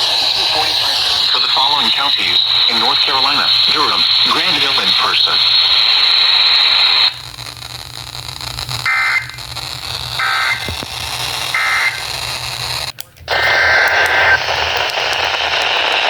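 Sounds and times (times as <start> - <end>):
radio hiss: 0.0 - 16.0
warbling digital data bursts: 8.8 - 16.0.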